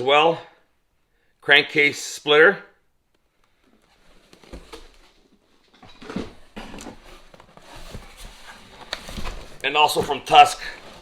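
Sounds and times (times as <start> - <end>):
rustling of packaging: 3.7 - 11.0.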